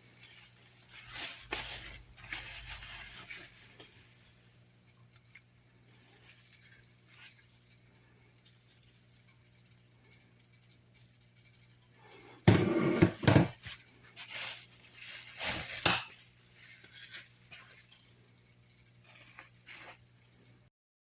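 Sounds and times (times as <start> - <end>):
steady low hum: 0.0 - 20.7
hard objects knocking and clattering: 12.4 - 13.8.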